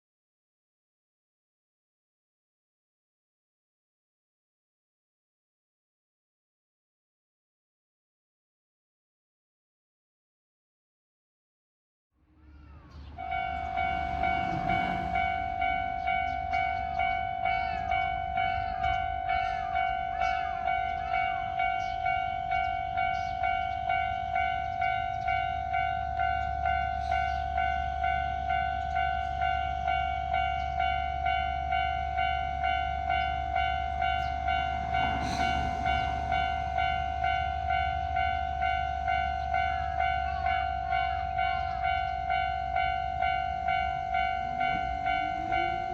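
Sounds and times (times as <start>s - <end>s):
train running: 12.3s - 45.9s
level-crossing electronic bell: 13.1s - 45.9s.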